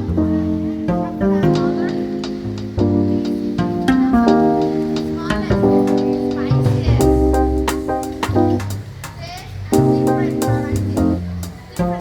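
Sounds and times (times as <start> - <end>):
plucked strings music: 0.0 - 12.0
steady beat: 0.9 - 12.0.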